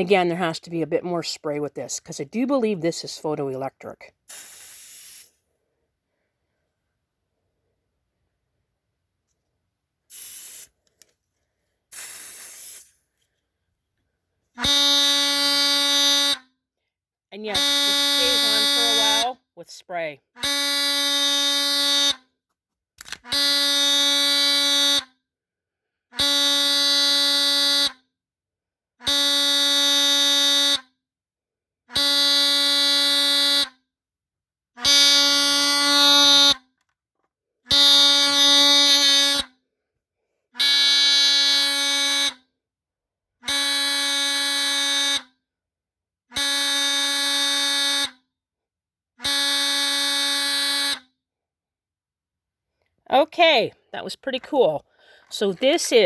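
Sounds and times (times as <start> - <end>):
smoke detector buzzer alarm: 14.6 - 16.4, 17.5 - 19.4, 20.4 - 22.2, 23.3 - 25.1, 26.2 - 27.9, 29.0 - 30.8, 31.9 - 33.7, 34.9 - 36.6, 37.7 - 39.5, 40.6 - 42.3, 43.4 - 45.3, 46.4 - 48.2, 49.2 - 51.1.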